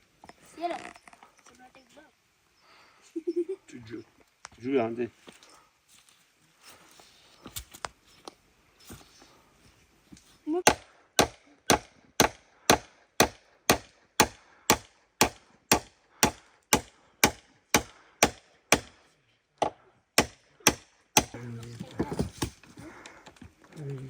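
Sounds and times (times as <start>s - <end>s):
chopping on wood: 10.6s - 19.0s, 19.6s - 21.4s.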